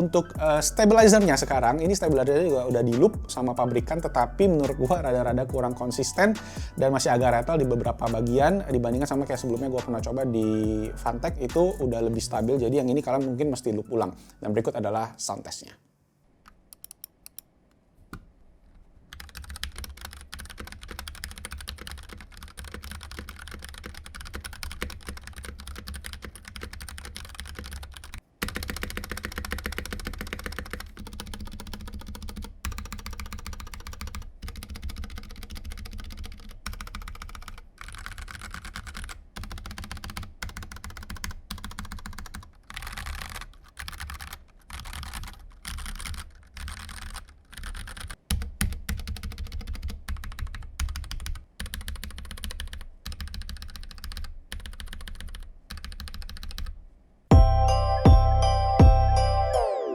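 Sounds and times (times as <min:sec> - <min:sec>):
fast typing on mechanical keyboard: 0:19.1 - 0:56.8.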